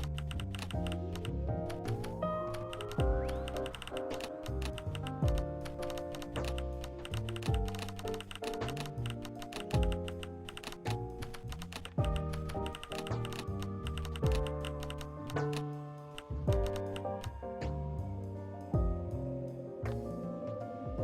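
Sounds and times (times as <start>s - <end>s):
rapid keyboard typing clicks: 0.0s - 15.6s, 16.2s - 17.3s
background music with deep beat: 0.0s - 21.0s.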